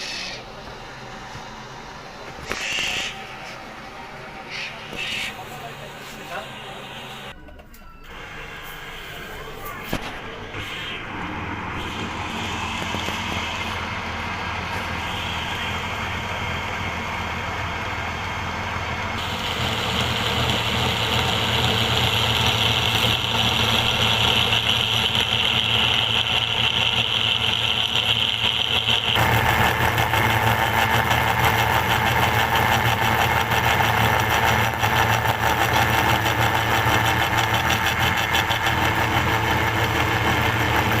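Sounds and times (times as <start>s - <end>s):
high cutting whine: 8.1s - 41.0s
lathe humming: 10.3s - 41.0s.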